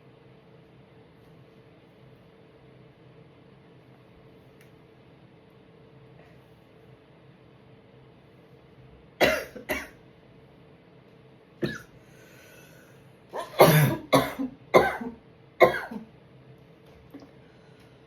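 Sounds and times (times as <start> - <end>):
person coughing harshly: 9.2 - 10.0, 11.6 - 12.0, 13.3 - 16.1.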